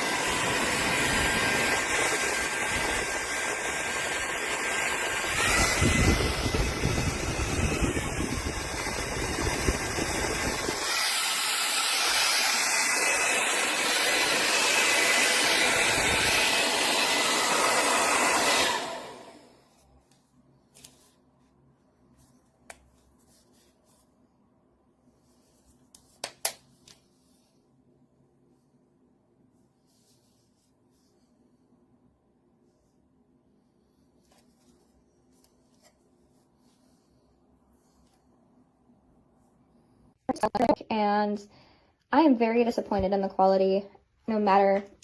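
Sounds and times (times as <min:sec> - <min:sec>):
hair dryer blowing with whine: 0:00.0 - 0:19.7.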